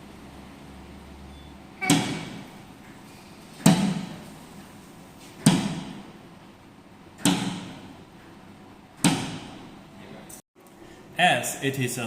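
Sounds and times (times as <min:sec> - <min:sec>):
locker doors springing open: 0:01.8 - 0:04.4.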